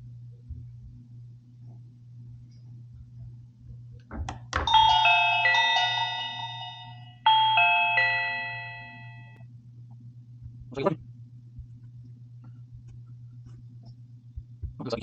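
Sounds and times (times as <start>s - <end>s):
doorbell chime ringing: 4.7s - 9.4s.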